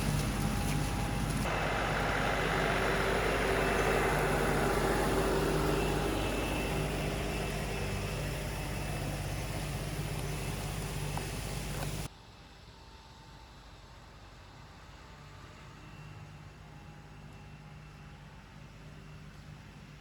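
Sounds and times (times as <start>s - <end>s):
tractor engine running: 0.0s - 12.1s.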